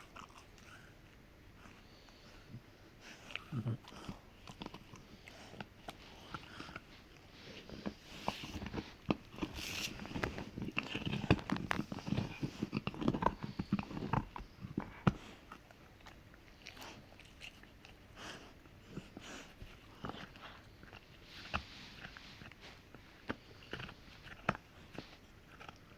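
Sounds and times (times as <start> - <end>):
dog teeth cracking on hoof chew: 8.6 - 18.1, 23.2 - 25.9.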